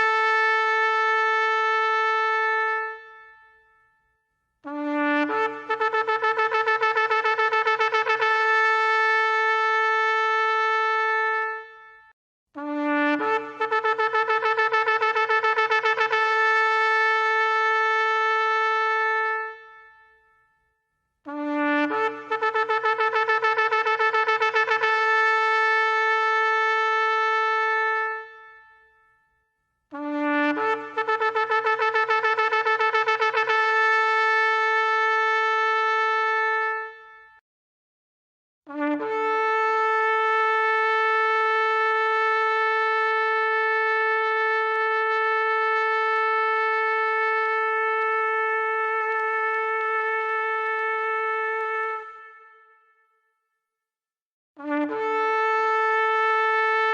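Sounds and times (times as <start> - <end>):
shofar blasts: 4.6 - 8.7, 10.1 - 20.3, 21.3 - 29.1, 29.9 - 37.4, 38.7 - 42.5, 46.7 - 53.1, 54.6 - 56.9.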